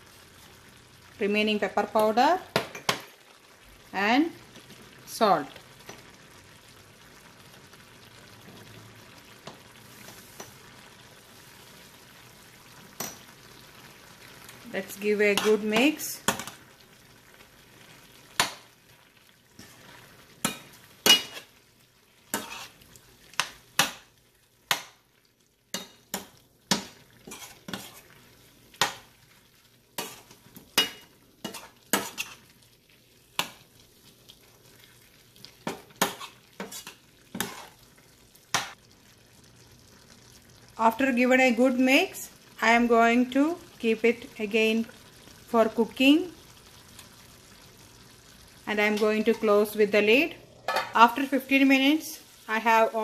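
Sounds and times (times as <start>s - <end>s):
faint sizzle: 0.0s - 53.0s
spoon scraping a pan: 15.1s - 16.6s, 19.6s - 21.6s, 22.3s - 24.0s, 25.7s - 28.2s, 30.0s - 32.5s, 35.6s - 37.9s, 48.8s - 52.9s.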